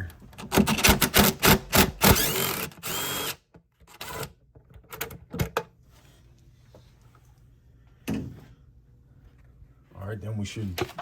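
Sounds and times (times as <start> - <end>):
cordless power driver running: 1.1 - 3.4.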